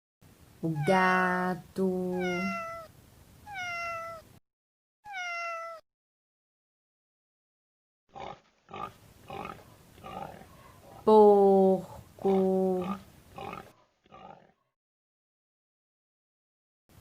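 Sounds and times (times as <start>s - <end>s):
cat meowing: 2.1s - 4.3s, 5.1s - 5.8s
pig grunting: 8.2s - 11.1s, 11.8s - 14.6s.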